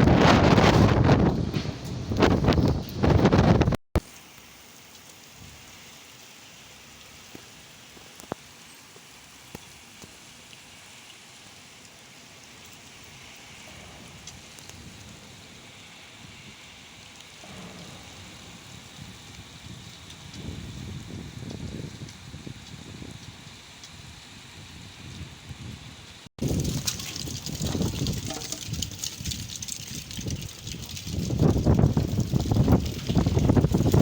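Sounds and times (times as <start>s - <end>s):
wind noise on microphone: 0.0s - 3.8s, 13.0s - 34.0s
rain falling: 0.0s - 34.0s.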